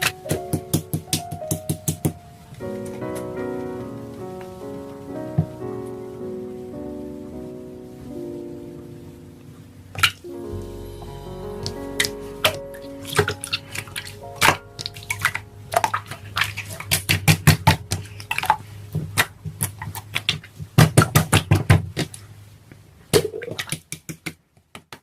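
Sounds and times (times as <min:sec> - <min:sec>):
background music: 0:00.0 - 0:19.3
low hum: 0:08.8 - 0:19.5.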